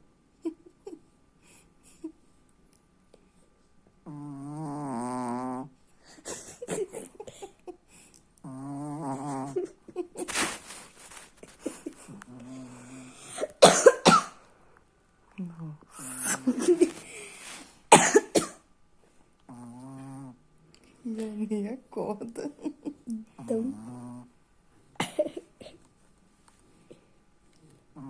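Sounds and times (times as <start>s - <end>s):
small dog snoring: 4.0s - 5.8s, 8.4s - 9.6s, 12.1s - 13.3s, 19.5s - 20.4s, 23.4s - 24.4s, 27.6s - 28.0s.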